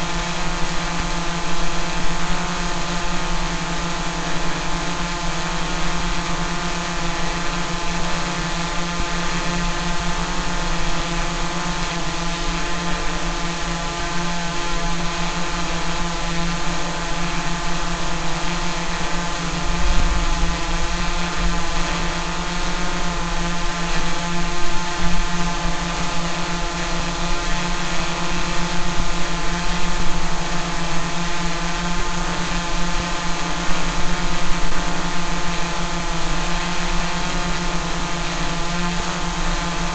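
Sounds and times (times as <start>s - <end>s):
drone propellers humming: 0.0s - 39.9s.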